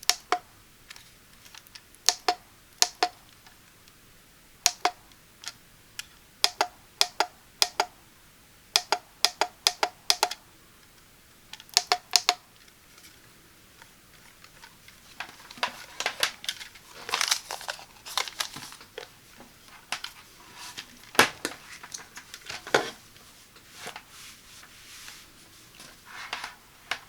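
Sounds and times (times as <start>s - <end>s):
sharp clicks and knocks: 0.0s - 3.5s, 4.6s - 8.0s, 8.8s - 10.4s, 11.5s - 12.4s
packaging rustling: 14.1s - 24.7s.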